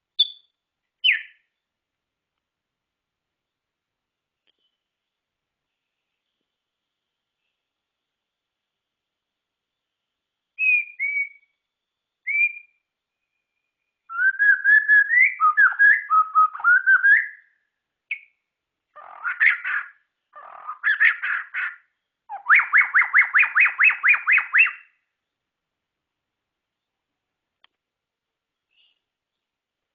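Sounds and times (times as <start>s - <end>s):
bird singing: 0.2s - 1.7s, 9.5s - 18.4s, 19.0s - 25.5s.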